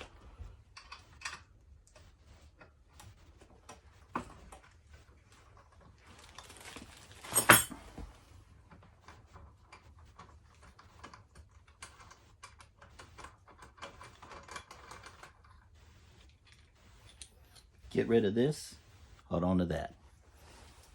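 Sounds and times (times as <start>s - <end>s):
packaging being handled: 6.1s - 7.4s.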